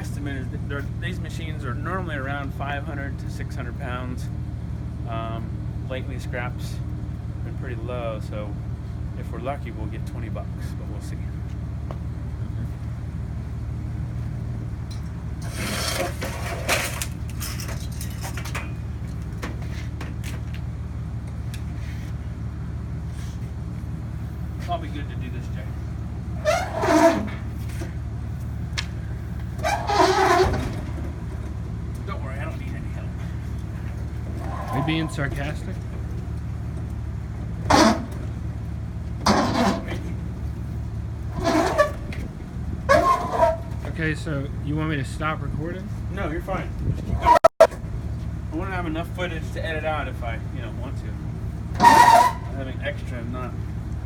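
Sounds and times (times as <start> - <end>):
vehicle engine idling: 0.0 - 54.0
clicks and knocks of metal: 14.9 - 20.7
scraping and rubbing on metal: 15.4 - 19.0, 26.3 - 28.6, 29.4 - 36.0, 37.6 - 38.4, 39.2 - 42.3, 42.9 - 44.0, 51.6 - 52.6.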